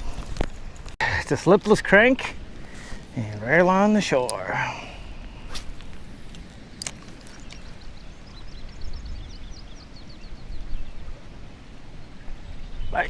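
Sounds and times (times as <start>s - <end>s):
small bird chirping: 6.8s - 11.1s.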